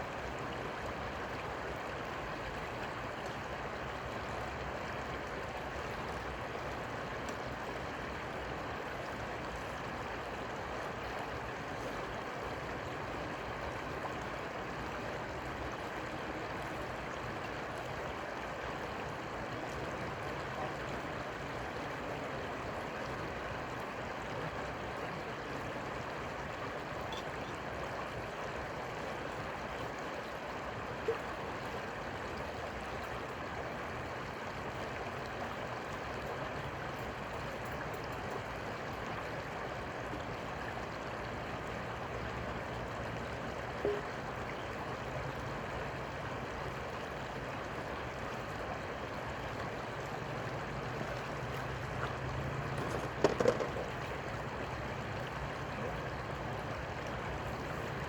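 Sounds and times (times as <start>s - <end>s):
flowing river water: 0.0s - 58.0s
knocks: 52.8s - 53.9s.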